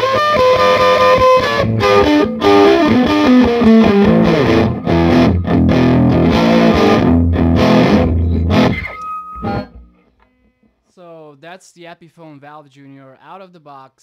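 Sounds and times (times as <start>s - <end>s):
overdriven electric guitar riff: 0.0s - 10.1s.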